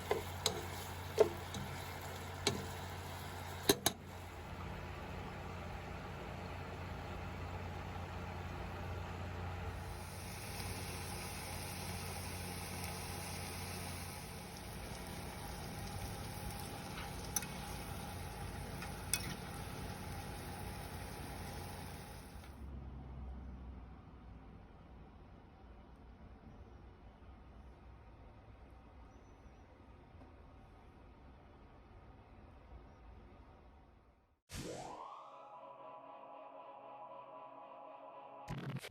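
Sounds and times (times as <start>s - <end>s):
chicken wings sizzling in a pan: 0.0s - 3.8s, 9.8s - 22.5s.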